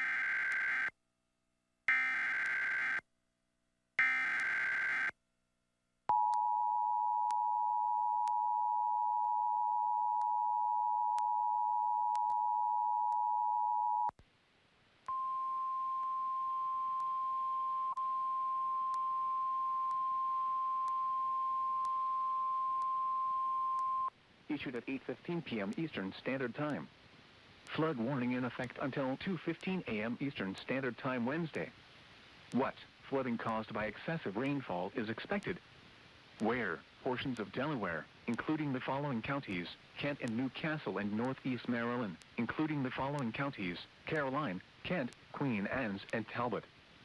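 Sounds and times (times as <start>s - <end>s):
steady warning alarm tone: 0.0s - 0.9s, 1.9s - 3.0s, 4.0s - 5.1s.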